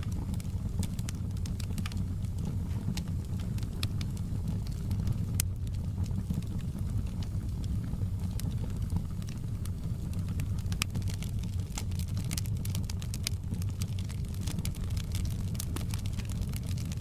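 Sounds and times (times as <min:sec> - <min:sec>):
fire crackling and popping: 0:00.0 - 0:17.0
low rumble of flames: 0:00.0 - 0:17.0.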